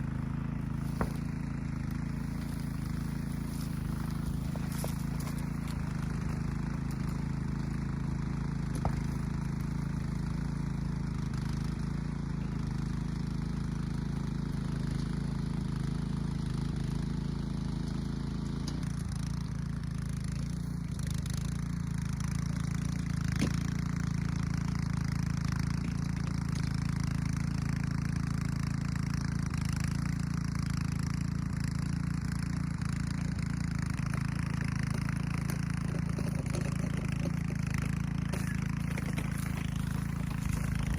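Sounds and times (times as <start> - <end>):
rototiller engine running: 0.0 - 40.9.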